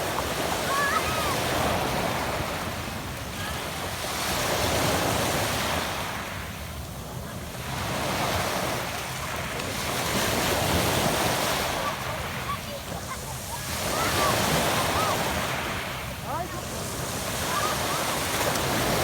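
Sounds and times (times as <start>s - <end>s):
waves breaking on pebble shore: 7.7s - 19.0s.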